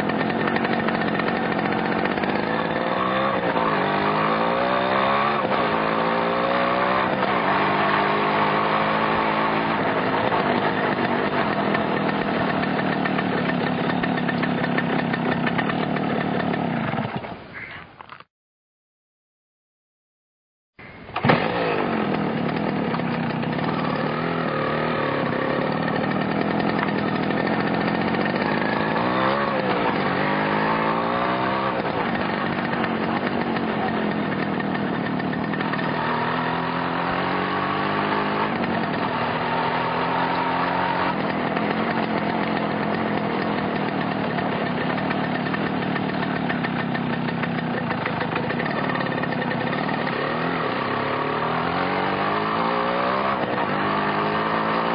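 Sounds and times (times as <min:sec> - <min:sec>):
motorcycle engine revving: 0:00.0 - 0:17.4, 0:21.1 - 0:54.9.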